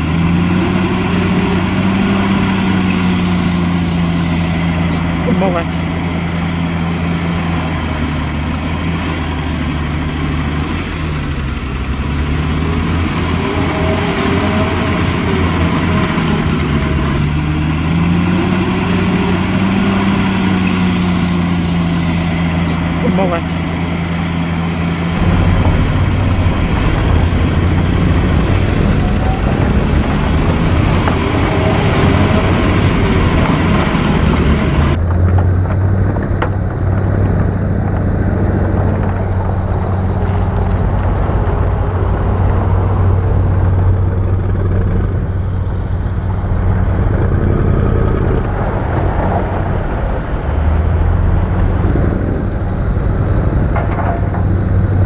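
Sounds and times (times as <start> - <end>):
machinery hiss: 0.0 - 35.0
heavy diesel engine droning: 0.0 - 55.0
machinery clatter: 0.0 - 55.0.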